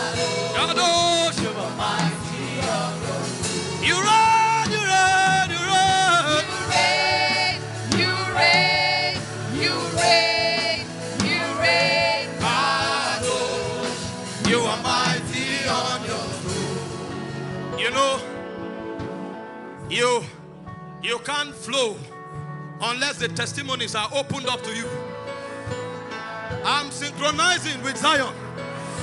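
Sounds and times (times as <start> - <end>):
person singing gospel: 0.0 - 18.4
instrumental backing: 0.0 - 29.0.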